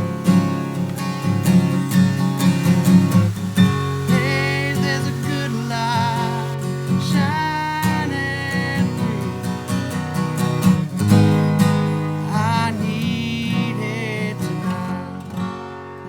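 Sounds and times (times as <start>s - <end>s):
strummed acoustic guitar: 0.0s - 16.0s
person singing long wavering notes: 3.8s - 9.9s, 12.2s - 15.2s.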